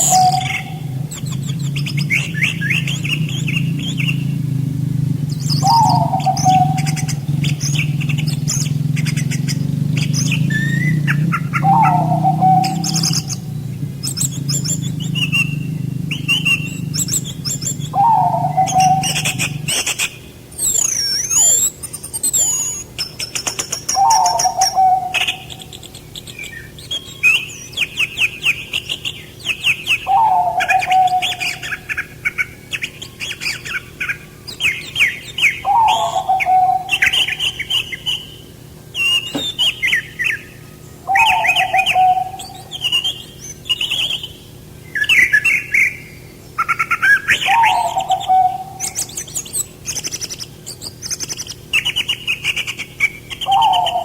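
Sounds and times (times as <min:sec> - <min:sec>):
bird falling call: 0:00.0 - 0:21.7, 0:23.1 - 0:54.0
songbirds chirping and trilling: 0:00.0 - 0:54.0.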